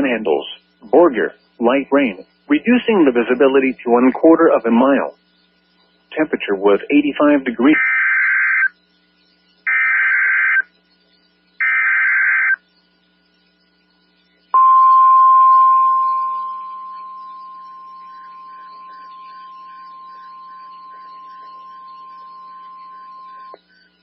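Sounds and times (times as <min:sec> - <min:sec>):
warbling digital data tones: 0:00.0 - 0:24.0
steady warning alarm tone: 0:09.4 - 0:24.0.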